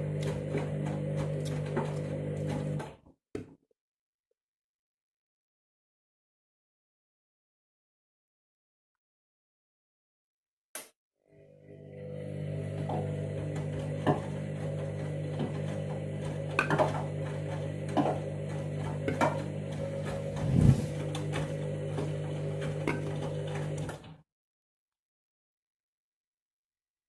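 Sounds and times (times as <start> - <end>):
washing machine motor humming: 0.0 - 2.9, 11.4 - 24.2.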